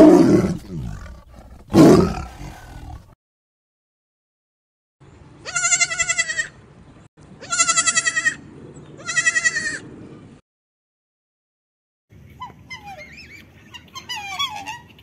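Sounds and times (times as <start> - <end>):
goat bleating: 5.4 - 6.6, 7.4 - 8.4, 9.0 - 9.8.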